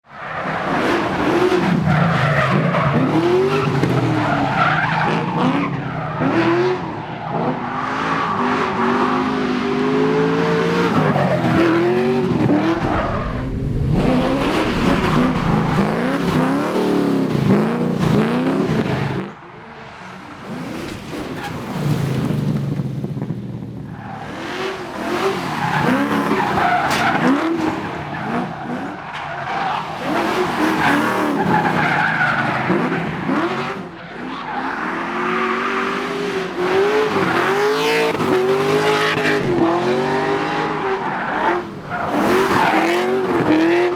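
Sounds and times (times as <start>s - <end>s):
car engine revving: 10.2s - 19.3s.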